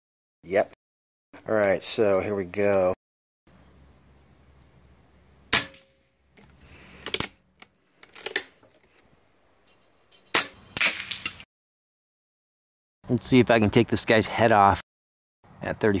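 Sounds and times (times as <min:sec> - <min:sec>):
air rifle shot: 0:05.5 - 0:05.9
metallic clicks of rifle action: 0:07.0 - 0:08.6.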